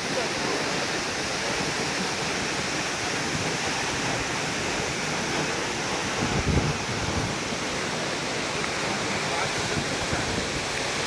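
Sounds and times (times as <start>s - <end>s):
waterfall roaring: 0.0s - 11.0s
wind rumble on microphone: 6.1s - 7.5s.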